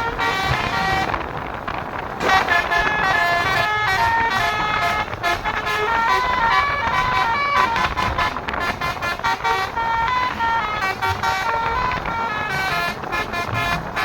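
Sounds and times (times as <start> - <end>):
multi-tone bus air horn tune: 0.0 - 14.0.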